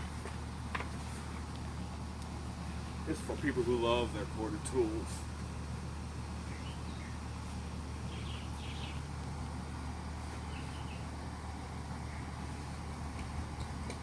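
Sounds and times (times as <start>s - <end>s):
low background hum: 0.0s - 14.0s.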